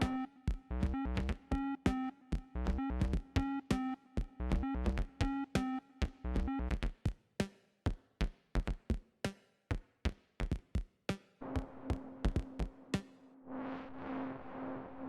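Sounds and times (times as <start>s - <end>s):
electronic drum pattern: 0.0s - 7.0s, 11.4s - 13.2s.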